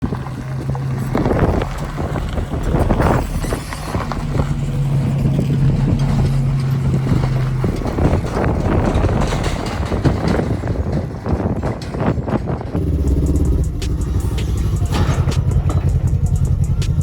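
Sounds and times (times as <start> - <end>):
knocks and rattles: 0.0 - 17.0
off-road vehicle engine running: 0.0 - 17.0
wind buffeting microphone: 0.0 - 17.0.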